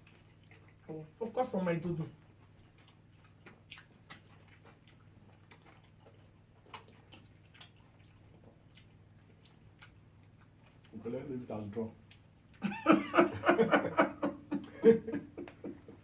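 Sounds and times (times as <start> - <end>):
chewing smacks: 0.0 - 0.9, 2.0 - 11.1, 11.9 - 12.6.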